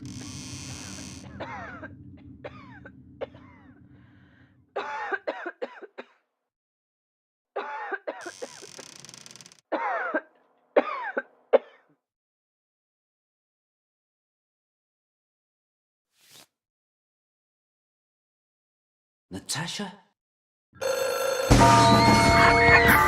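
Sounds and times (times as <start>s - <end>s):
coughs and throat-clearing: 1.2s - 3.7s, 4.8s - 6.3s, 7.6s - 8.6s, 9.7s - 12.0s.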